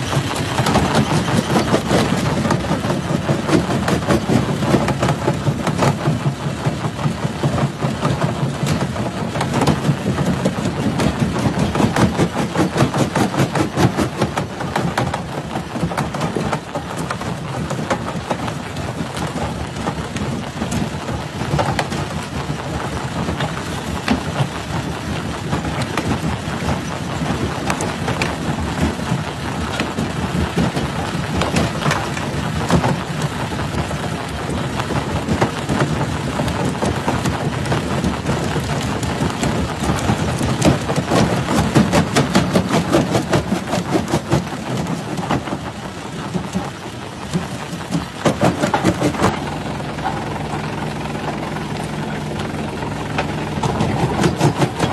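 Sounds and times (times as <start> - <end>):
machine rumble: 0.0 - 54.9
rock cracking and grinding: 46.4 - 54.9.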